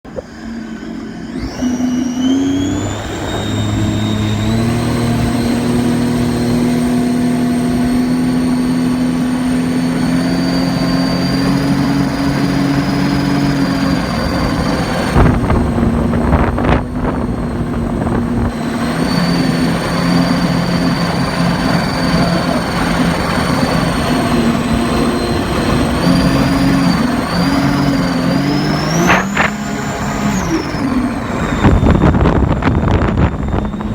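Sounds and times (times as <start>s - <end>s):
supercharger whine: 0.0s - 33.9s
car engine revving: 0.1s - 33.9s
short sharp bursts: 26.0s - 32.1s.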